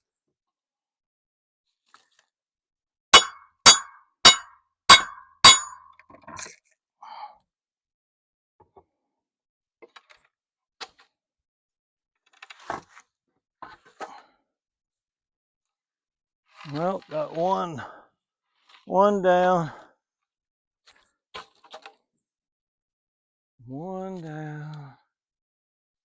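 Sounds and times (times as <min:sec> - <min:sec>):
hammer blows on metal: 0:03.2 - 0:05.8.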